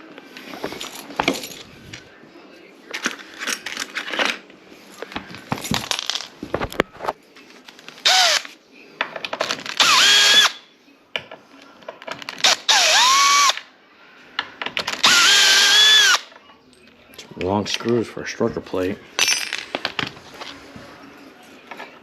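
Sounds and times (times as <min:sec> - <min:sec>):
screws and hardware clinking: 0:00.6 - 0:01.7, 0:19.2 - 0:20.2
cordless drill driving screws: 0:08.1 - 0:08.4, 0:09.8 - 0:10.6, 0:12.4 - 0:13.6, 0:15.0 - 0:16.2.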